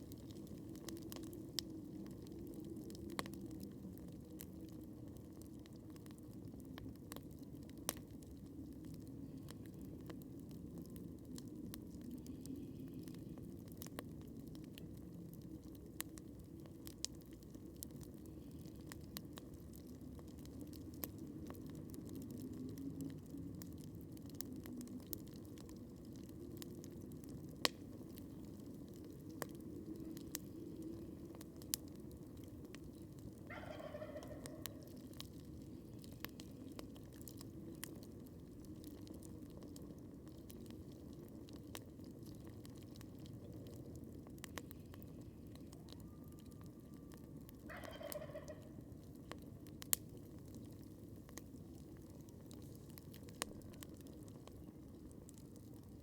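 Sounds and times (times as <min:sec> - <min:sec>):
campfire crackling and popping: 0:00.0 - 0:56.0
turkey gobbling: 0:33.5 - 0:34.8, 0:47.7 - 0:48.7.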